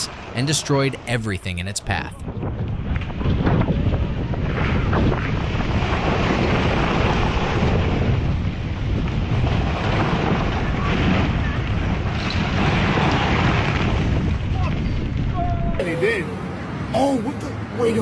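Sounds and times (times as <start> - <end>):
wind buffeting microphone: 2.2 - 15.8
torrent of water and debris roaring: 2.2 - 17.2.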